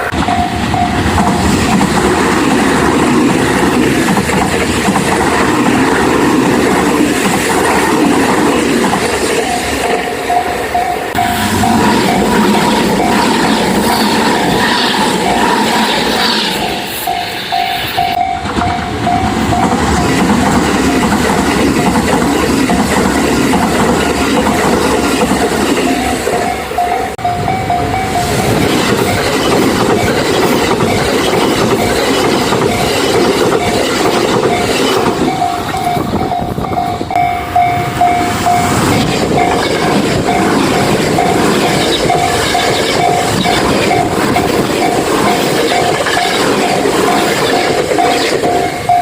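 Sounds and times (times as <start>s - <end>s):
crossing warning bell ringing: 0.0s - 5.0s, 8.6s - 49.0s
train wheels clattering over rails: 0.0s - 10.2s, 18.2s - 26.5s, 27.9s - 37.2s, 37.9s - 49.0s.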